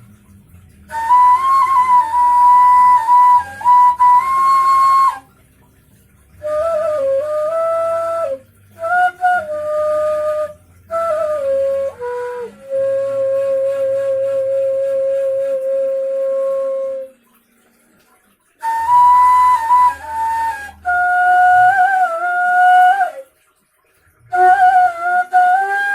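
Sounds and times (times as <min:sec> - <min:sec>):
breathy end-blown flute: 0:00.8 - 0:05.3, 0:06.4 - 0:17.2, 0:18.6 - 0:23.2, 0:24.3 - 0:25.9.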